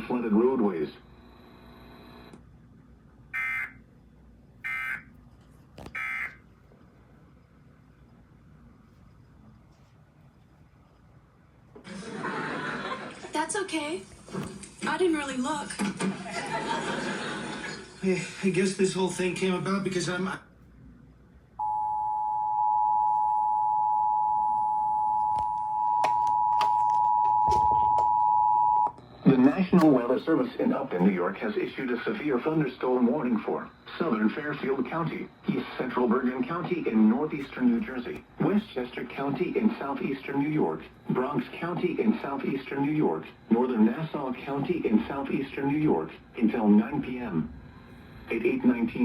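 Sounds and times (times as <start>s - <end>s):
shrill digital squawks: 6.0s - 6.4s.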